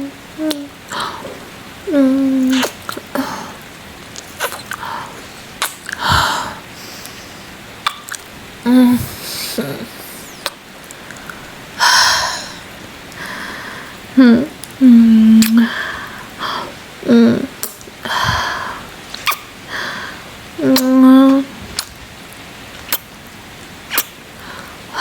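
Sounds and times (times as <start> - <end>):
hummed voice sounds: 0.0 - 3.6, 8.6 - 12.7, 14.0 - 15.8, 16.4 - 18.7, 20.6 - 21.6
faint steady rain: 0.0 - 25.0
wet kissing smacks and clicks: 4.2 - 4.8, 7.8 - 8.3, 19.2 - 19.5, 22.8 - 23.1, 23.9 - 24.2
breathy exhales: 4.4 - 7.5, 8.7 - 14.0.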